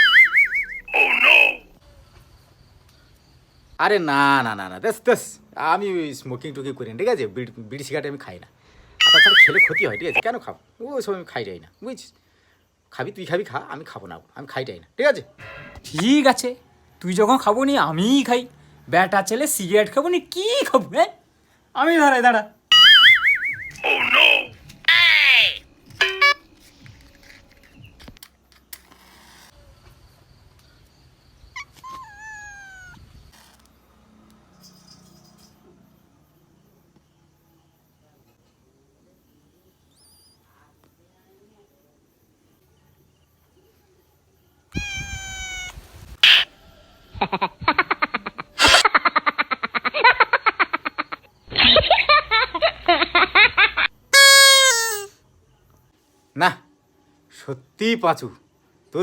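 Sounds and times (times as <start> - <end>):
cat meowing: 0.0 - 1.6, 9.0 - 10.2, 22.7 - 26.4, 31.7 - 33.0, 44.8 - 46.5
cartoon giggling laughter: 9.0 - 10.2, 22.7 - 26.4, 47.2 - 55.1.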